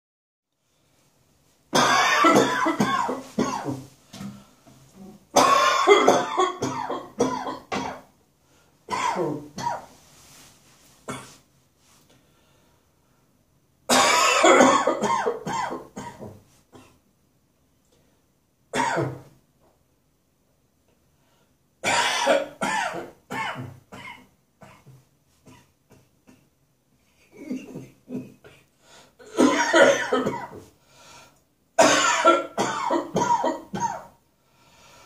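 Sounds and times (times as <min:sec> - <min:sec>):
person coughing harshly: 0:01.7 - 0:03.9, 0:05.4 - 0:08.1, 0:08.9 - 0:09.9, 0:13.9 - 0:17.0, 0:18.8 - 0:19.3, 0:21.8 - 0:26.4, 0:27.3 - 0:30.7, 0:31.8 - 0:34.2.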